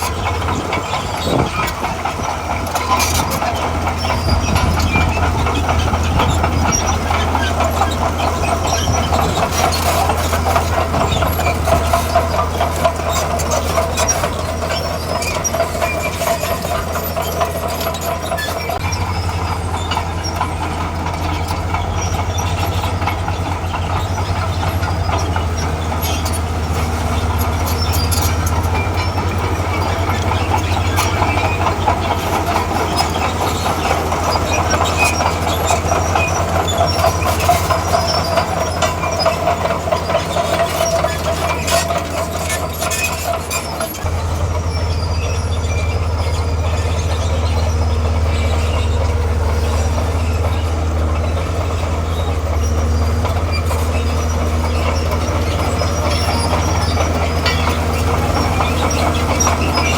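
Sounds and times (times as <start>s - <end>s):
constant rattle: 0.0s - 59.9s
heavy diesel machinery running: 0.0s - 59.9s.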